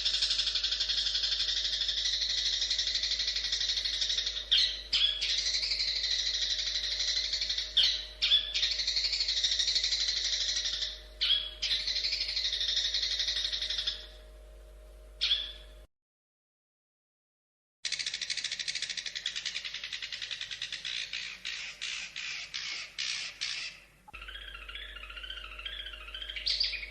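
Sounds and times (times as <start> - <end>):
loud sharp bird calls: 0.0 - 14.2, 15.2 - 15.8, 17.9 - 26.9
shrike chattering song: 17.9 - 26.9.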